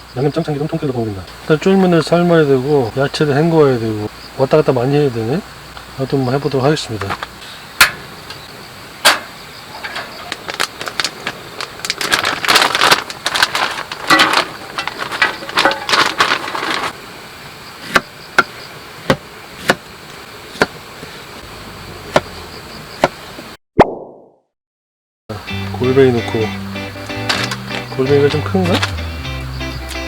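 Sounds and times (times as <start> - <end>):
plastic packaging crinkling: 9.8 - 17.0.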